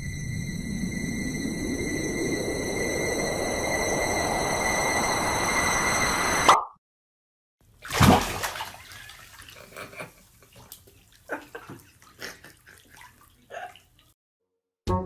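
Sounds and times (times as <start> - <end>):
water sloshing: 7.8 - 14.1
water splashing: 7.8 - 14.2.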